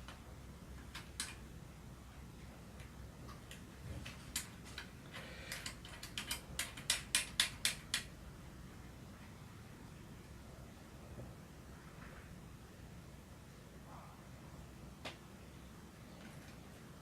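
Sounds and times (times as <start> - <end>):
small sharp clicks and taps: 5.5 - 8.1.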